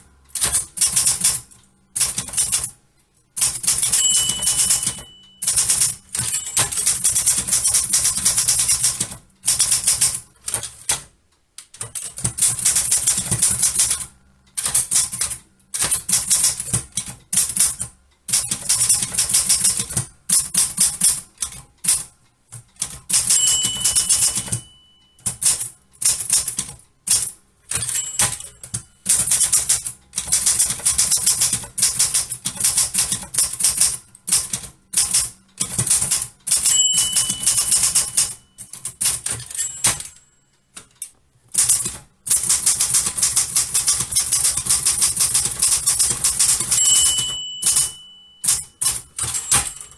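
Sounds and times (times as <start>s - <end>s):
typewriter margin bell: 3.4s - 10.8s, 17.4s - 22.1s, 22.8s - 40.5s, 41.6s - 49.9s
typewriter key strikes: 3.4s - 11.1s, 14.6s - 40.2s, 41.6s - 49.9s.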